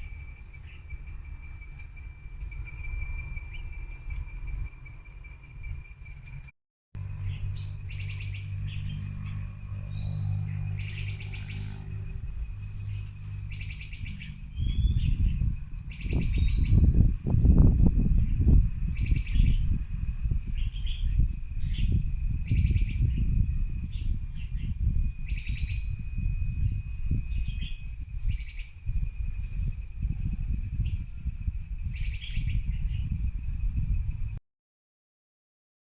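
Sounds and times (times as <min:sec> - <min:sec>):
loud low rumbling: 0:07.0 - 0:34.4.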